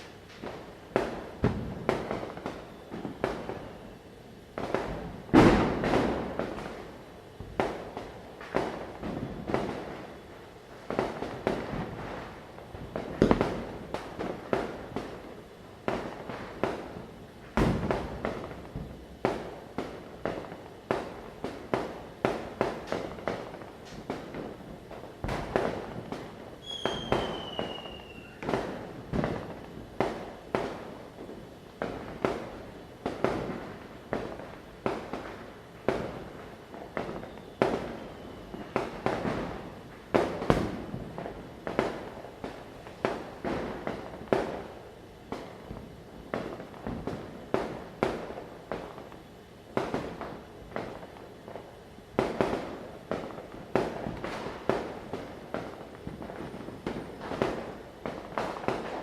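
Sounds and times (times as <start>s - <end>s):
firecrackers banging: 0.0s - 59.0s
high falling whistle: 26.6s - 28.4s.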